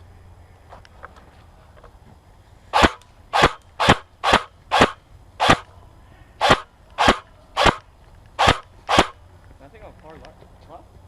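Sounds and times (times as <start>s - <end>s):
airsoft gun shots: 2.7s - 5.7s, 6.4s - 7.8s, 8.4s - 9.2s.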